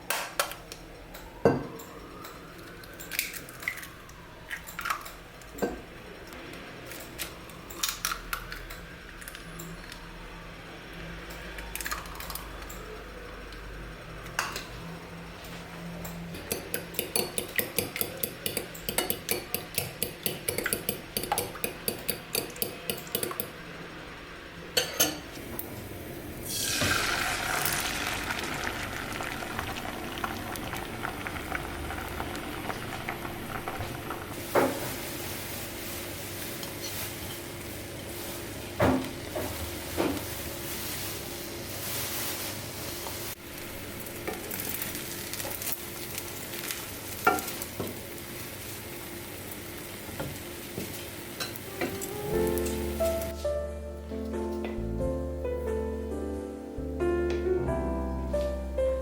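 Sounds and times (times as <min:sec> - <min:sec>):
fork beating eggs in bowl: 0:16.4 - 0:23.5
eggs sizzling in hot pan: 0:25.8 - 0:37.2, 0:42.7 - 0:53.3.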